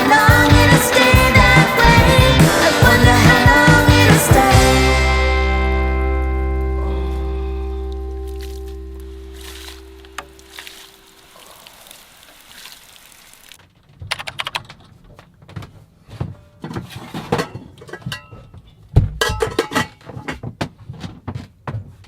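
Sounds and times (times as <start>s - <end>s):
music: 0.0s - 10.2s.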